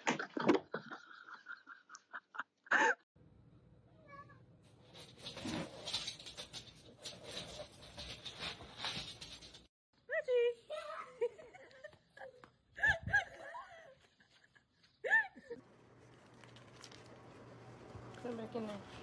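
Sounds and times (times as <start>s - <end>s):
rustling noise: 4.6s - 9.7s.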